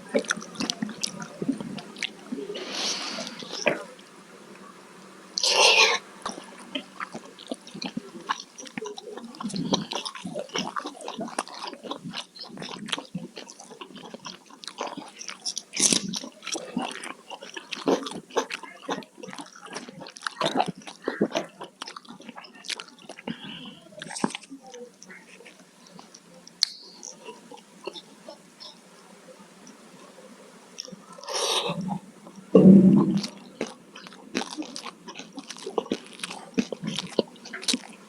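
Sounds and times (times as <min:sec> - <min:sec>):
chewing and biting food: 0:00.0 - 0:02.2, 0:06.2 - 0:23.4, 0:24.0 - 0:28.0, 0:33.4 - 0:38.0.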